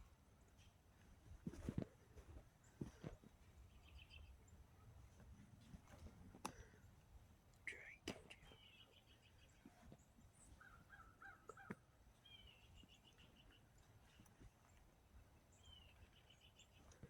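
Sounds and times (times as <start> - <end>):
faint birdsong: 2.4 - 5.4, 6.5 - 17.0.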